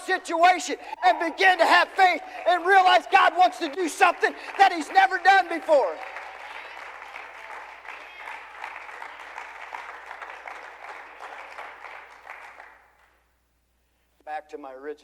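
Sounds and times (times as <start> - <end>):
congregation applauding: 0.0 - 13.2.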